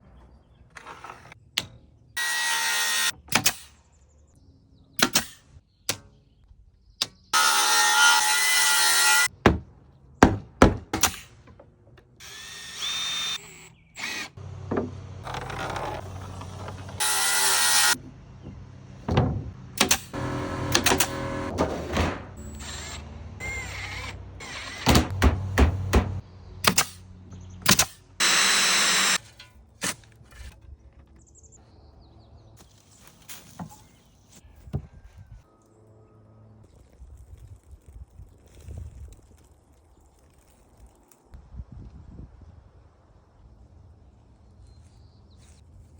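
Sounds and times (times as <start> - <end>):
wooden knocks and clunks: 9.4 - 12.0, 14.6 - 17.0, 18.0 - 20.0, 24.9 - 26.2
power tools working wood: 12.2 - 18.7, 19.8 - 26.2, 28.2 - 29.2.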